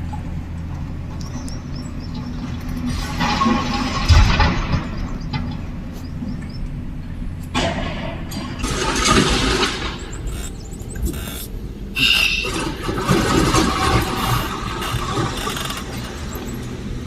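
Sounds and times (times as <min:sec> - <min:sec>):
excavator diesel engine running: 0:00.0 - 0:17.0
metal rattling: 0:07.5 - 0:17.0.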